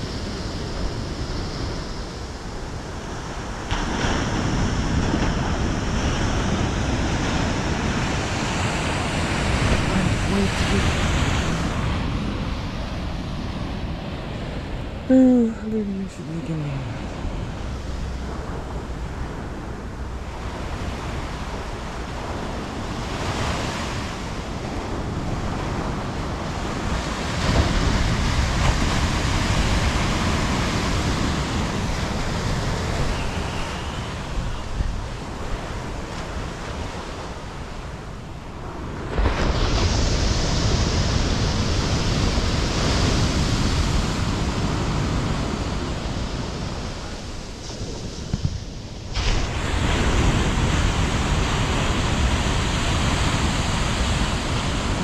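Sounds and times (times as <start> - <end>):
ocean surf breaking: 0.0 - 15.1, 16.3 - 55.0
wind buffeting microphone: 16.8 - 55.0.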